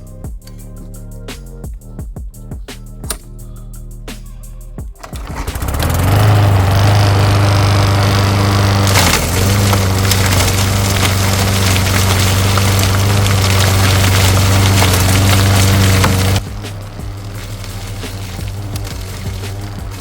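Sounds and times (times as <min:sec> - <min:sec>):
lawn mower engine running: 0:05.0 - 0:20.0.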